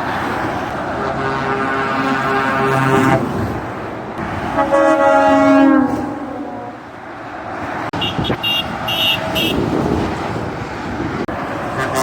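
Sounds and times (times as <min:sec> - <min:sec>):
passing traffic: 0:00.0 - 0:12.0
truck air horn chord: 0:01.0 - 0:03.3, 0:04.5 - 0:06.7, 0:11.7 - 0:12.0.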